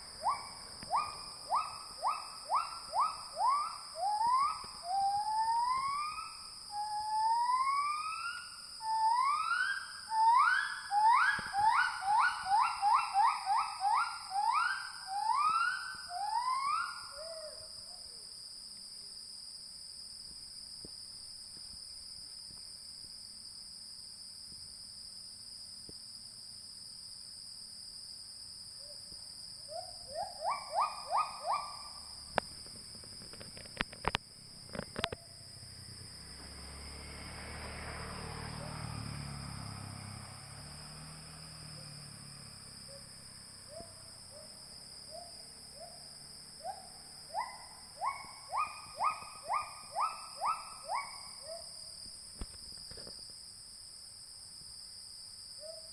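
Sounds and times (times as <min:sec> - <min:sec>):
insects droning: 0:00.0 - 0:55.9
animal whistle-like calls: 0:00.2 - 0:17.6, 0:29.7 - 0:32.1, 0:46.6 - 0:51.6
sharp clicks: 0:32.4 - 0:35.2.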